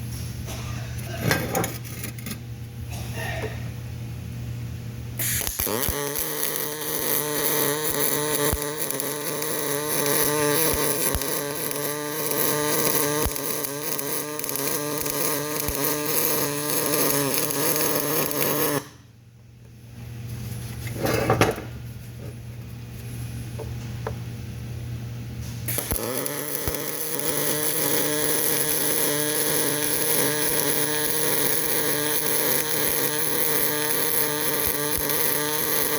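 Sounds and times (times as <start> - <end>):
welding arc crackling and buzzing: 5.2 - 19.0, 25.6 - 35.9.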